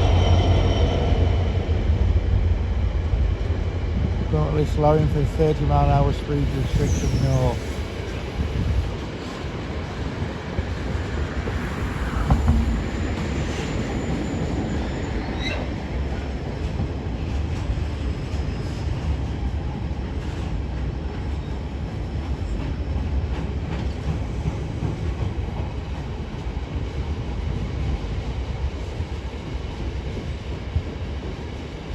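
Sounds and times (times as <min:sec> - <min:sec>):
high wheel squeal: 0:00.0 - 0:01.8, 0:06.4 - 0:07.9
train wheels rumbling on rail: 0:00.0 - 0:31.9.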